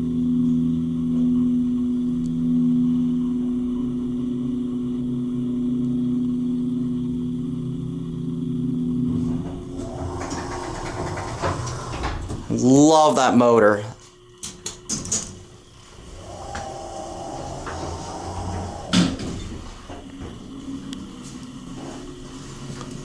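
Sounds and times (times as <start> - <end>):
elevator pump motor humming: 0.0 - 23.0
elevator clatter: 9.0 - 13.2, 14.5 - 20.5.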